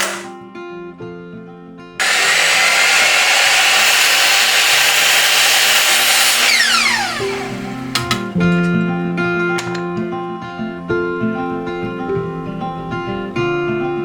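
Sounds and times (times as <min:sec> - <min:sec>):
motor winding down whine: 0:00.0 - 0:00.3, 0:02.0 - 0:08.7
power tool running: 0:00.0 - 0:00.4, 0:02.0 - 0:08.8, 0:09.6 - 0:09.9.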